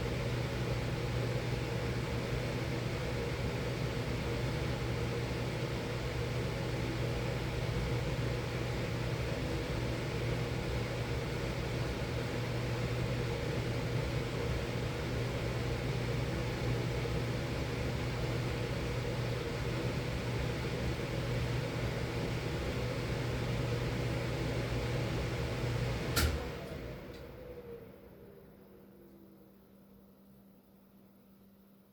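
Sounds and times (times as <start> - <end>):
furnace humming with blower: 0.0 - 31.9
furnace switch click: 26.2 - 26.5.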